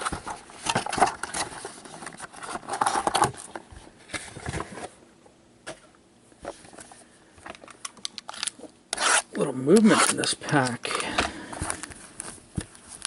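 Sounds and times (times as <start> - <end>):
packaging rustling and crinkling: 0.0 - 5.0.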